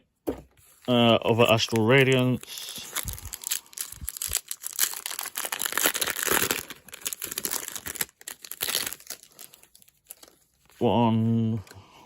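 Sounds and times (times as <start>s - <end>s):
foil wrapper tearing and crinkling: 1.3s - 10.5s.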